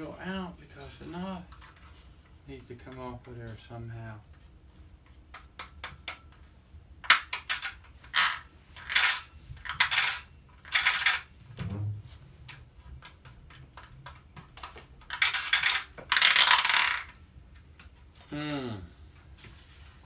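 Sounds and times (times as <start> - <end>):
small metal pieces clinking: 7.3 - 11.3, 15.1 - 17.2.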